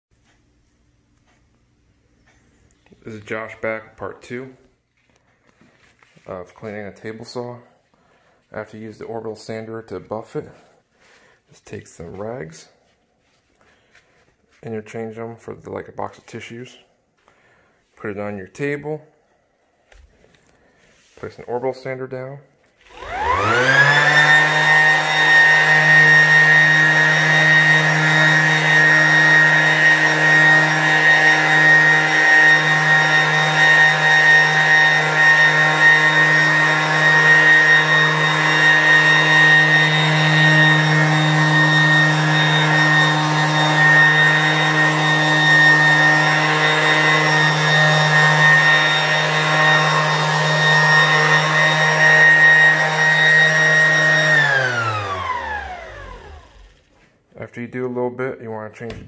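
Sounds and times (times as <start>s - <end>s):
orbital sander motor hum: 22.9s - 56.8s.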